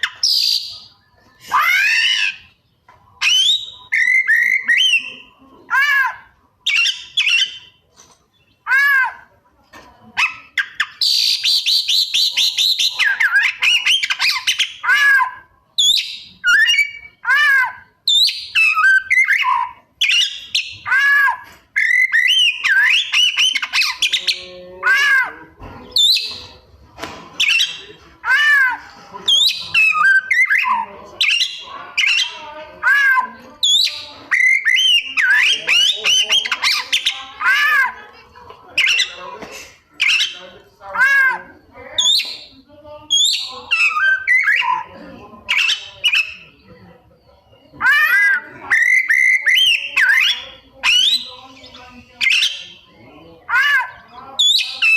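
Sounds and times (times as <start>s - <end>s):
fast high bird chattering: 10.2s - 25.4s, 27.4s - 38.0s, 47.8s - 54.9s.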